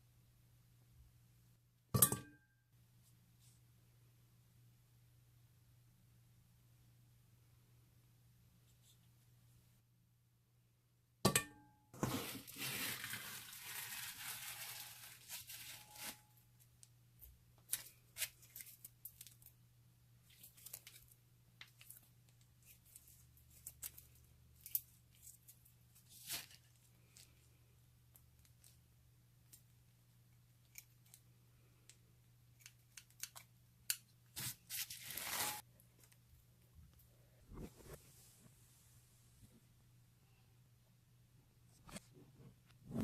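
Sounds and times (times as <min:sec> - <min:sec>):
packaging tearing and crinkling: 0:12.2 - 0:16.2.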